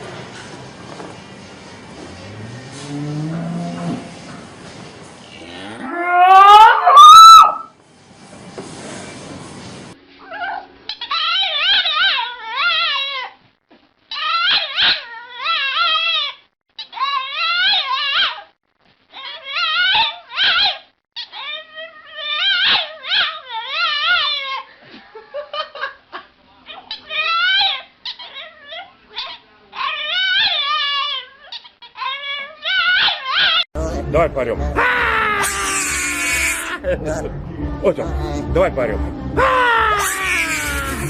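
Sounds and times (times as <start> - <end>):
animal crying loudly: 5.6 - 7.7, 14.1 - 18.4, 19.2 - 24.6, 26.8 - 33.6, 34.8 - 36.8, 39.4 - 41.0
dog whining and howling: 5.8 - 7.7, 10.2 - 13.4, 14.1 - 18.5, 19.2 - 24.7, 27.0 - 33.6, 34.8 - 36.8, 39.4 - 41.0.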